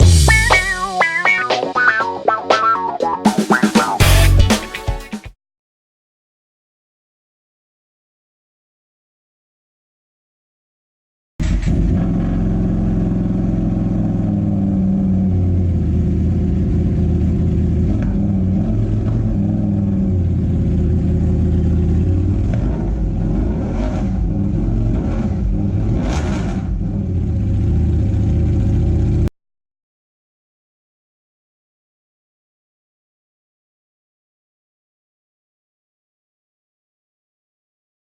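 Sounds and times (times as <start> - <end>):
motorcycle engine revving: 11.4 - 29.3.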